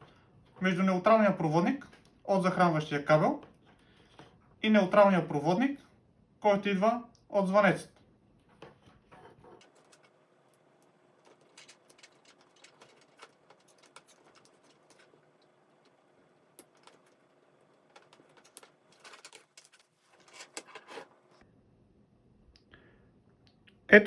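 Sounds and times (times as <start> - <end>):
clicks of electrical wires handled: 11.2 - 15.5.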